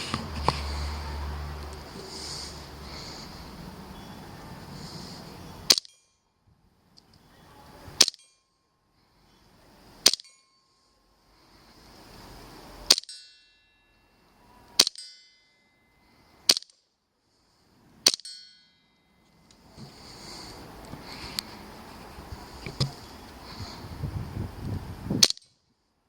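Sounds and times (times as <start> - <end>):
steel target ringing: 12.9 - 14.2.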